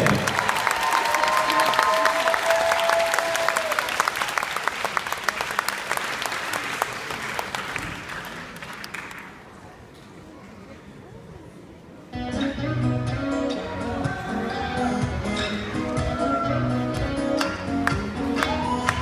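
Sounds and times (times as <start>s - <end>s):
audience applauding: 0.0s - 9.5s.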